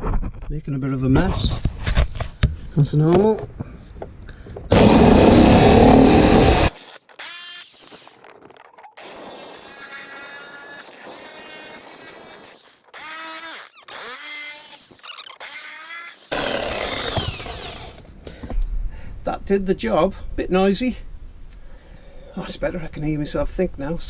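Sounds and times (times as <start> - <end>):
power tool cutting: 4.7 - 8.3, 9.0 - 18.1.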